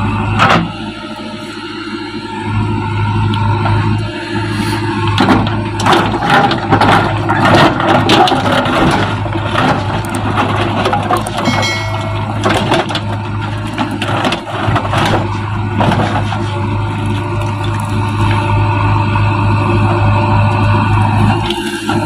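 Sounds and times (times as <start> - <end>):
backhoe engine running: 0.0 - 22.0
brick and masonry crunching: 5.1 - 19.0.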